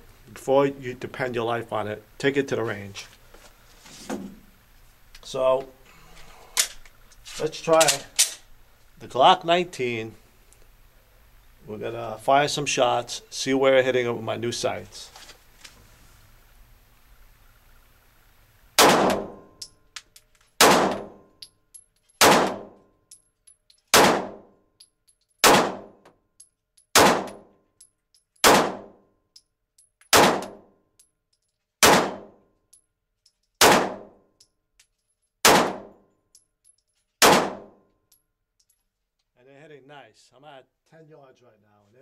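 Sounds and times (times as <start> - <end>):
pistol shots with echo: 18.8 - 19.5, 20.6 - 21.2, 22.2 - 22.8, 23.9 - 24.4, 25.4 - 25.9, 27.0 - 27.4, 28.4 - 29.0, 30.1 - 30.6, 31.8 - 32.3, 33.6 - 34.1, 35.4 - 35.9, 37.2 - 37.7.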